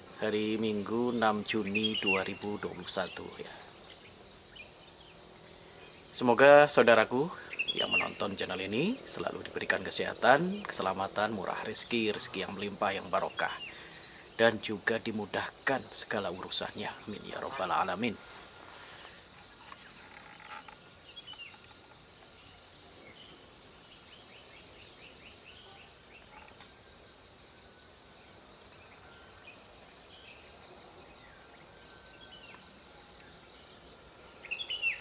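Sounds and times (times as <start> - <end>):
high insect drone: 0.0 - 35.0
faint bird chirps: 0.5 - 6.3, 7.3 - 9.2, 22.4 - 27.0, 28.2 - 35.0.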